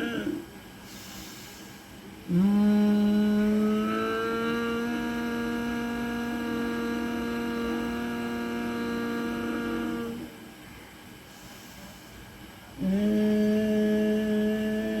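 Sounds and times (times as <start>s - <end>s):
person humming nasally: 0.0s - 0.5s, 2.3s - 10.4s, 12.8s - 15.0s.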